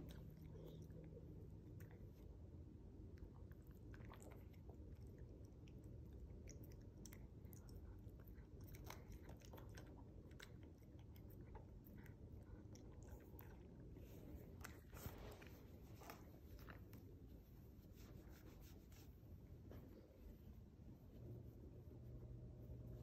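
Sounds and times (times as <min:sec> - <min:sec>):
cat chewing a treat: 0:03.0 - 0:17.2.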